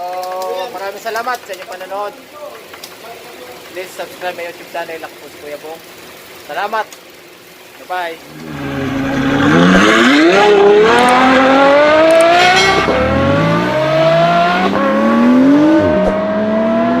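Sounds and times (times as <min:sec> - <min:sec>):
car engine accelerating: 0:08.2 - 0:17.0.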